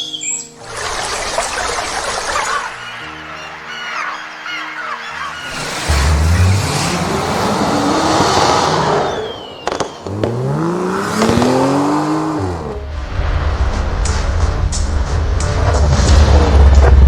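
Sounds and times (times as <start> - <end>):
dense rushing noise: 0.6 - 17.0
car engine rising and falling: 5.4 - 17.0.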